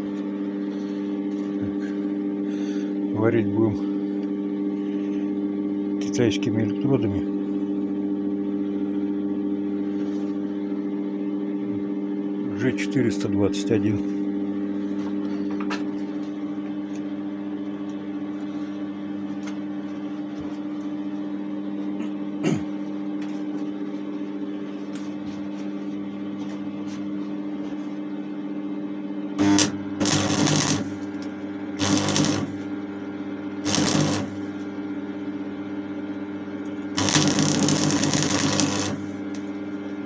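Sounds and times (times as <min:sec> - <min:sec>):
stick welder humming: 0:29.3 - 0:40.0
welding arc crackling: 0:29.4 - 0:32.8, 0:33.5 - 0:34.7, 0:36.7 - 0:40.0.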